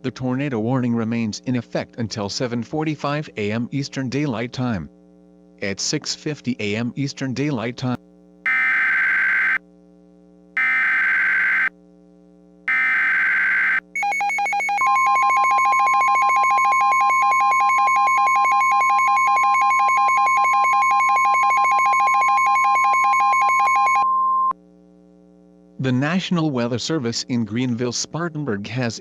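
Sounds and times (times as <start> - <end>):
buzzy data bursts: 10.6 - 11.7
warbling electronic alert tone: 10.6 - 11.7, 12.7 - 24.1.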